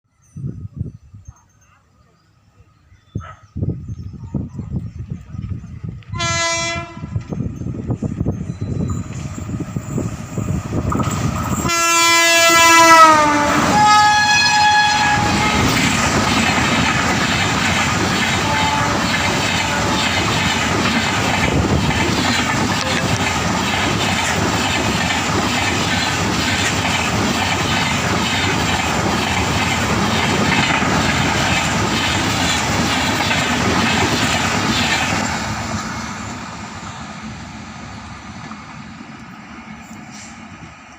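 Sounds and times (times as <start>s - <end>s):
two-tone train horn: 6.1s - 7.4s, 11.6s - 15.9s, 18.3s - 20.3s, 22.7s - 23.4s
train wheels clattering on rails: 7.2s - 12.0s, 15.1s - 40.9s.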